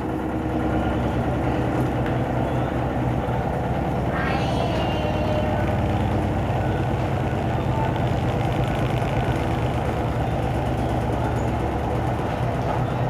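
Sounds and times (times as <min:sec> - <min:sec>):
washing machine humming: 0:03.8 - 0:08.9.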